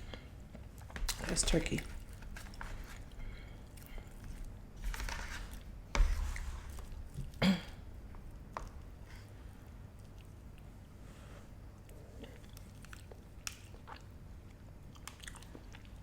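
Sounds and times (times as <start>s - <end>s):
chewing and mouth sounds: 11.8s - 16.0s.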